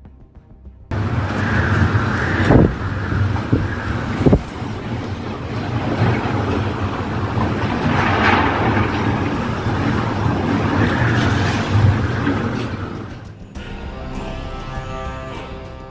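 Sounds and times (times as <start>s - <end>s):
wind gusts buffeting microphone: 0.9s - 13.4s.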